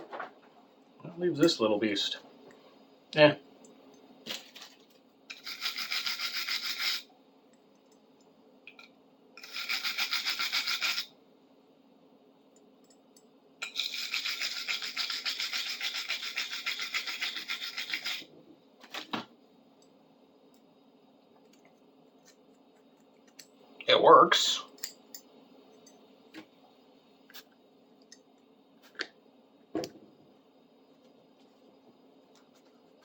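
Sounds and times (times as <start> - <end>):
brush scrubbing metal tool: 5.3 - 7.1, 9.4 - 11.1, 13.6 - 18.2.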